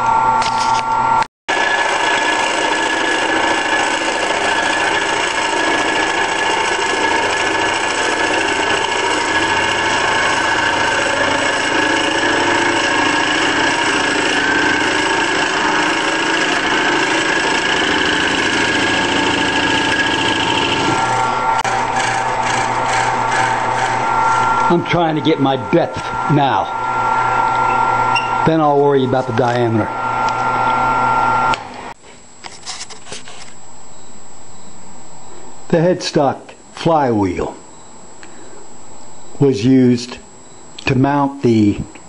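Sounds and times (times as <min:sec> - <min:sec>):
wood lathe running: 0:01.5 - 0:31.7.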